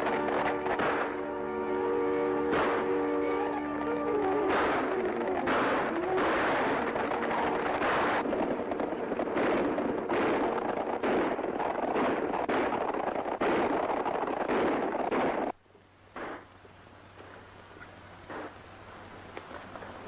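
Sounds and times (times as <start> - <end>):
gunshots: 0.0 - 1.2, 2.4 - 3.0, 4.0 - 15.5, 16.2 - 16.5
dense continuous noise: 0.0 - 20.0.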